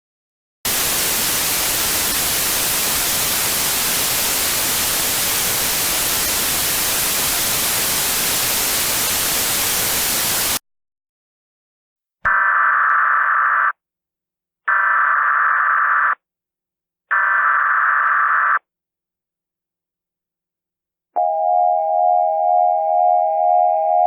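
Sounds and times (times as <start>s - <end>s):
static hiss: 0.7s - 10.6s.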